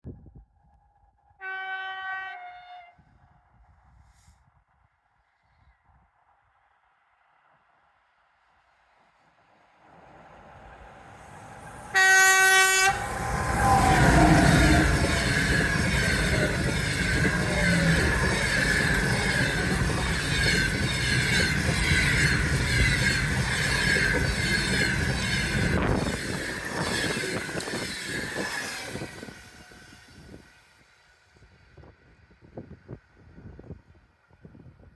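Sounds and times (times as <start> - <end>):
locomotive horn blast: 1.4 - 3.0, 11.9 - 22.9
passing train rumble: 9.1 - 34.8
train wheel clatter: 13.0 - 30.3.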